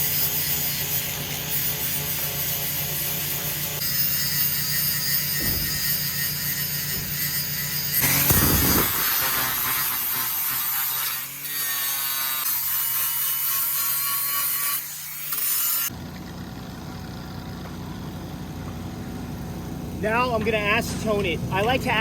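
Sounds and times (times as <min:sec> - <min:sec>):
grinder grinding aluminum: 0:00.0 - 0:16.0.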